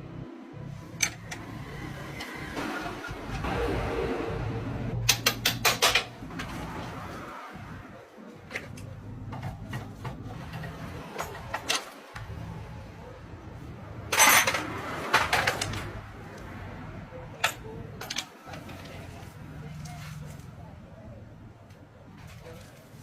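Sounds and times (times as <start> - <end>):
metal tools clinking together: 14.1 - 15.8.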